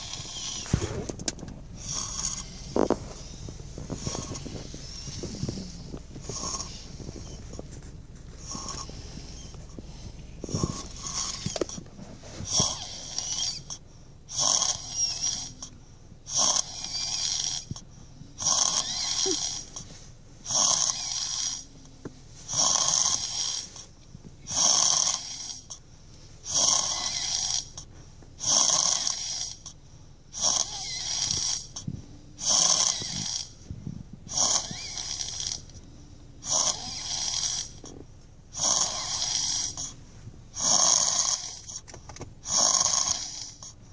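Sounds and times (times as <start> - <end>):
child snoring: 0.0 - 21.8, 22.5 - 25.8, 26.4 - 35.8, 36.4 - 40.0, 40.6 - 43.8.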